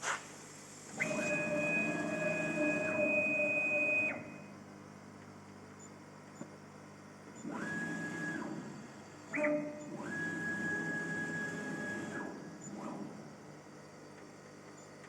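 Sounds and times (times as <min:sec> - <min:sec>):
stepper motor whine: 0:00.9 - 0:04.6, 0:07.4 - 0:13.3.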